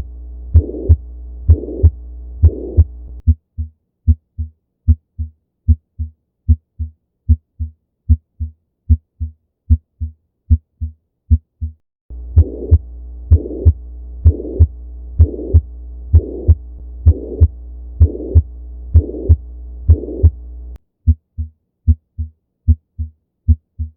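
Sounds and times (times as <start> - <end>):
low hum: 0.0 - 3.3, 12.1 - 20.8
harsh heart murmur: 0.0 - 23.9
lub-dub heart sounds: 0.0 - 23.9.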